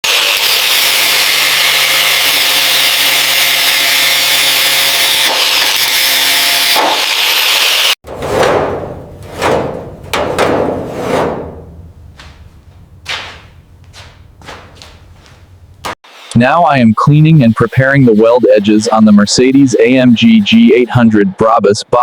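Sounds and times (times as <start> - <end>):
power tool cutting sheet metal: 0.0 - 8.0
rasping strokes: 17.1 - 20.8.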